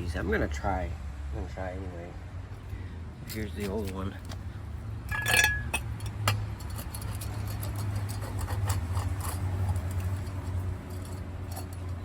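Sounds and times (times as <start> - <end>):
metal tools clinking: 5.1 - 12.0.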